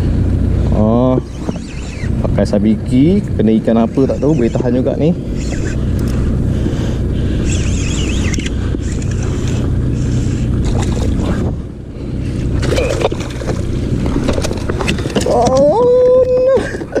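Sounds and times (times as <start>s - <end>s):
steady low drone: 0.0s - 17.0s
water around a kayak: 0.0s - 17.0s
wind buffeting microphone: 0.0s - 17.0s
sharp clicks: 5.4s - 6.2s, 7.5s - 9.6s.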